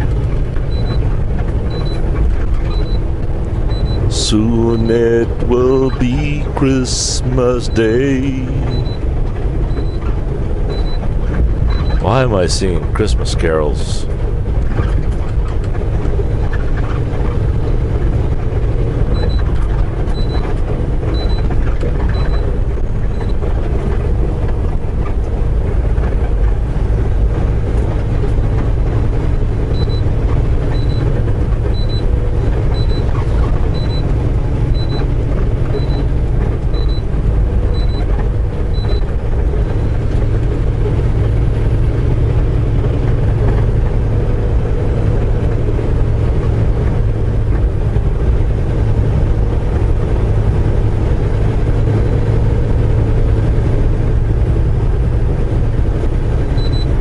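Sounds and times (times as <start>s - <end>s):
truck engine and road noise: 0.0s - 57.0s
short high electronic beep: 4.6s - 9.0s.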